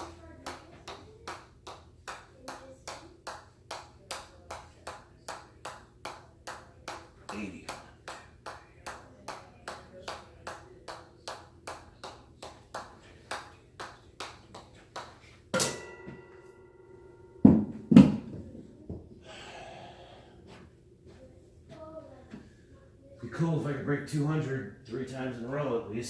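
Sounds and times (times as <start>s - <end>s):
metallic clang: 15.5s - 18.2s.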